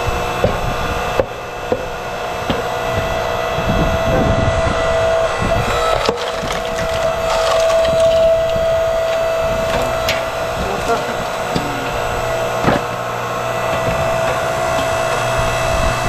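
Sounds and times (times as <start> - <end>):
log splitter motor humming: 0.0 - 16.0
wood cracking: 4.7 - 16.0.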